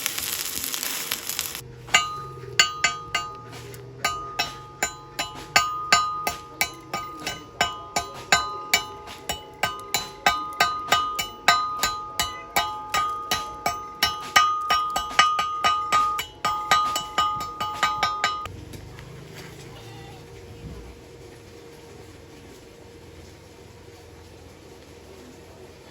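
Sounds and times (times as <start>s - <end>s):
hammer on steel plate: 1.8s - 18.5s.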